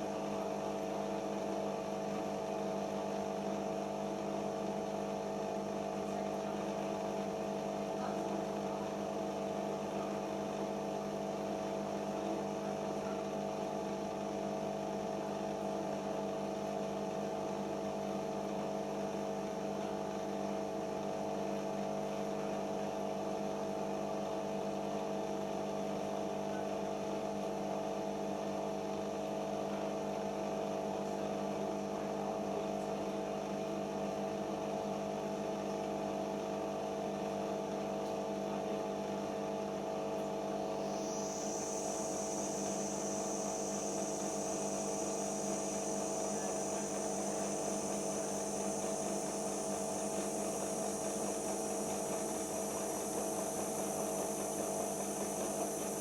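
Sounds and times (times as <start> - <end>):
washing machine mechanical hum: 0.0 - 56.0.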